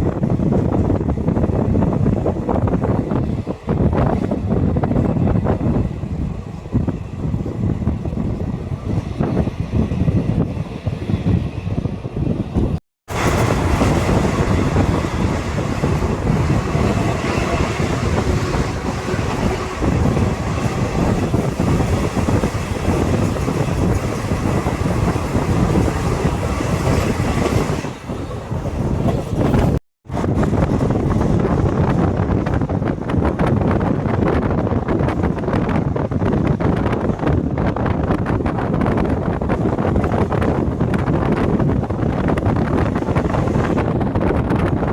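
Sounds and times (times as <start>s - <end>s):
train rumbling at speed: 0.0s - 44.9s.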